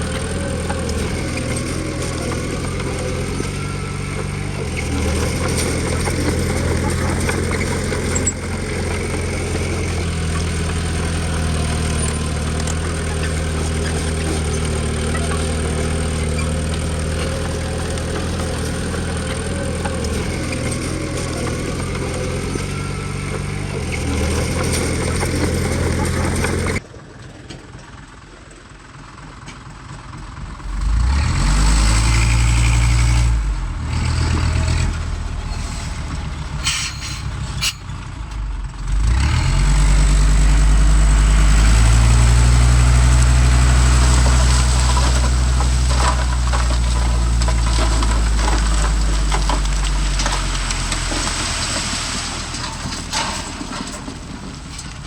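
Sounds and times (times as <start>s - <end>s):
heavy diesel engine running: 0.0s - 26.8s, 28.7s - 55.0s
engine revving loud and low: 30.6s - 36.7s, 38.7s - 52.0s.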